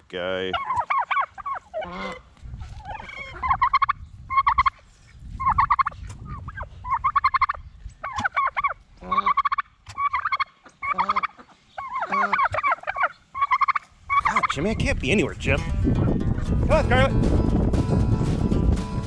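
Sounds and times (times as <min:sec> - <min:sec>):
turkeys gobbling: 0:00.5 - 0:14.6.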